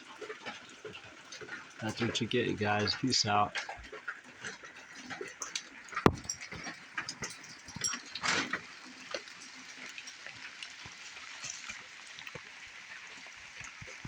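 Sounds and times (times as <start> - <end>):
light rain pattering: 0.0 - 14.0
water drips: 0.0 - 14.0.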